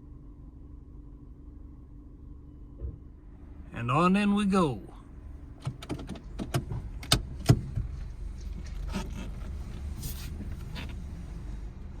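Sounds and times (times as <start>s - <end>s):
road rumble: 3.1s - 12.0s
car engine running slowly: 5.0s - 12.0s.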